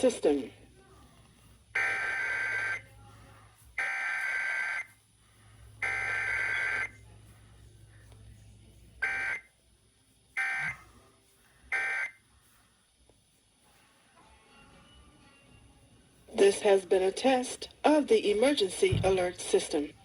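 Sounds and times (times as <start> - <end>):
emergency alert data bursts: 1.8 - 2.8, 3.8 - 5.0, 5.8 - 7.0, 9.0 - 9.5, 10.4 - 10.8, 11.7 - 12.2.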